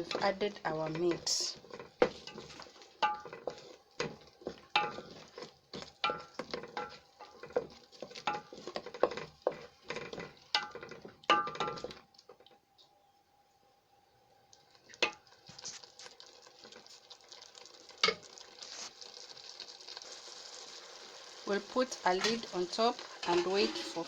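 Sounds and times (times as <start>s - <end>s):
spoon stirring and scraping in pot: 0.0s - 12.5s, 21.7s - 24.0s.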